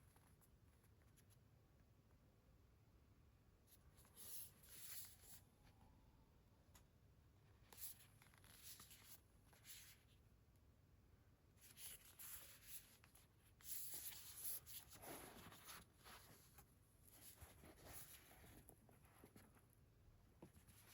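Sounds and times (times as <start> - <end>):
paper rustling and scraping: 11.6 - 19.6.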